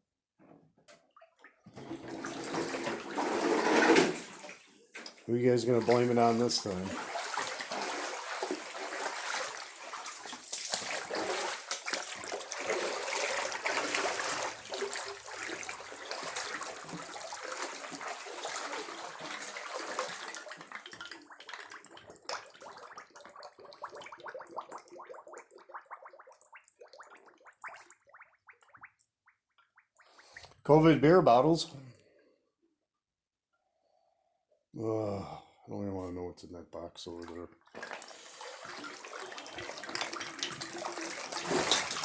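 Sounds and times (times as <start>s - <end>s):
water running and splashing: 2.0s - 28.8s, 37.7s - 42.0s.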